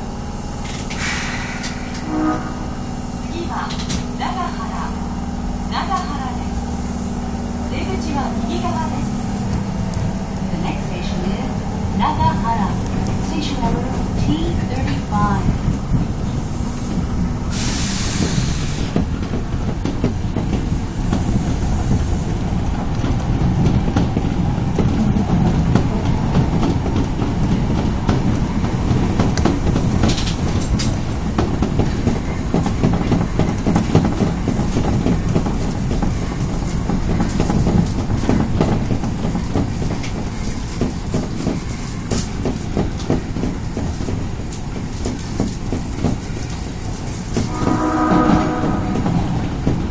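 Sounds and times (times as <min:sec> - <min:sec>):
rail joint clacks: 0:00.0 - 0:49.9
subway train rumble: 0:00.0 - 0:49.9
hiss: 0:00.8 - 0:02.0, 0:17.5 - 0:19.0.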